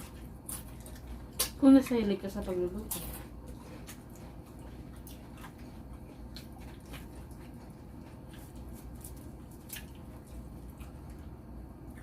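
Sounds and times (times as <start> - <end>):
wet chewing and mouth smacks: 0.0 - 2.0, 2.7 - 12.0
low steady hum: 0.0 - 12.0.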